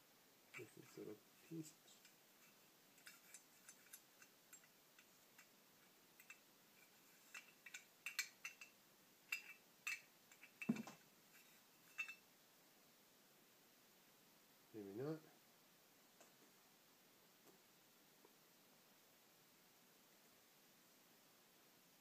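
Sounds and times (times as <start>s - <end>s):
small metal parts clicking: 2.0s - 5.5s, 7.2s - 8.7s, 9.3s - 10.8s, 11.9s - 12.2s.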